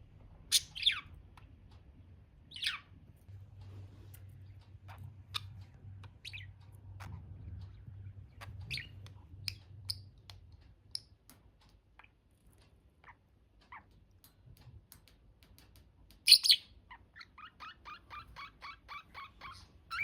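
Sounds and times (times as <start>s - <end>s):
low steady hum: 0.0s - 20.0s
budgerigars chirping: 0.5s - 1.2s, 2.5s - 3.0s, 4.8s - 11.1s, 16.3s - 20.0s.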